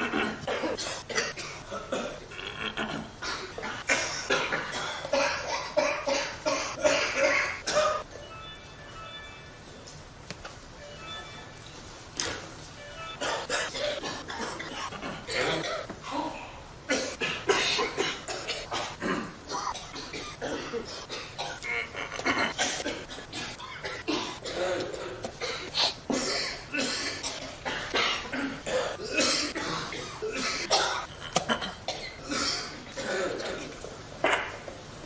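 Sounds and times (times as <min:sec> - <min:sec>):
people coughing: 0:00.0 - 0:08.2, 0:13.0 - 0:34.8.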